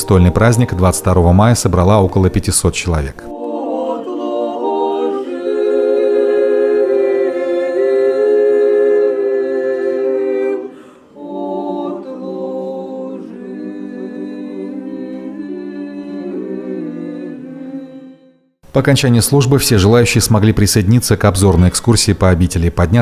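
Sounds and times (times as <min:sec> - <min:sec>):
unaccompanied choir chanting: 0:00.0 - 0:02.4, 0:03.2 - 0:18.6.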